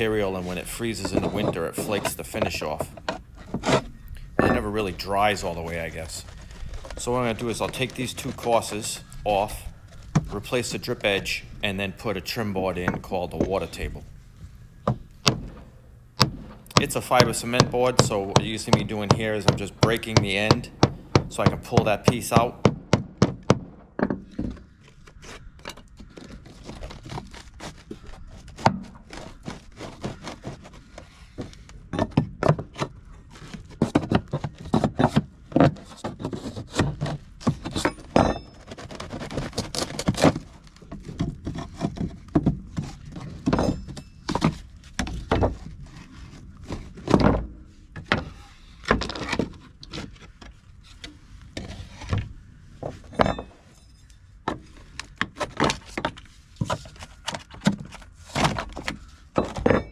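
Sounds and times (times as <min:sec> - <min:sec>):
scraping: 0:00.0 - 0:22.7
siding boards thunking and knocking: 0:00.0 - 0:53.8, 0:54.4 - 0:59.9.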